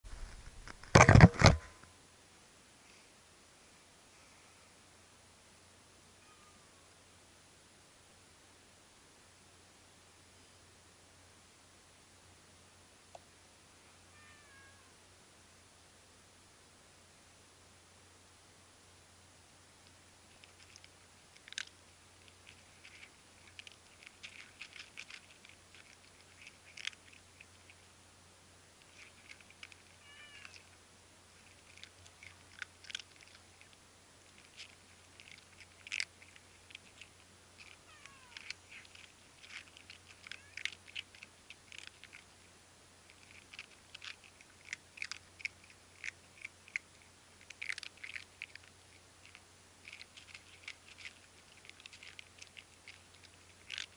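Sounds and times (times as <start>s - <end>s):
cats crunching food: 19.8s - 28.0s, 28.6s - 53.9s.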